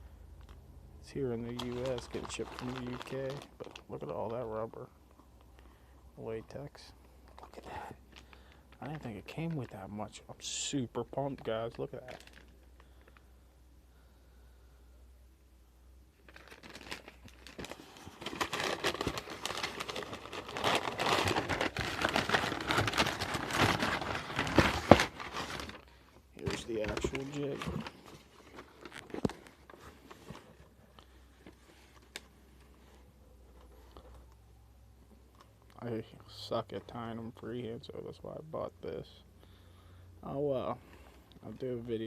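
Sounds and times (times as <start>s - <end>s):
packaging crinkling and rustling: 0.4s - 4.8s, 10.5s - 13.2s, 16.2s - 32.8s.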